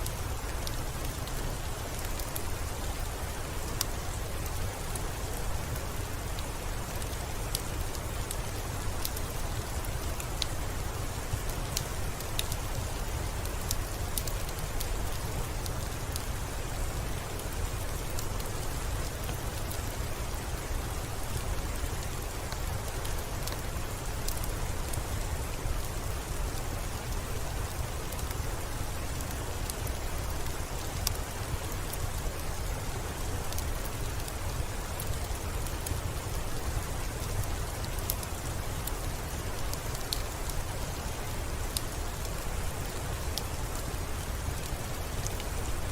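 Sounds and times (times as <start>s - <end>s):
steady rain falling: 0.0s - 45.9s.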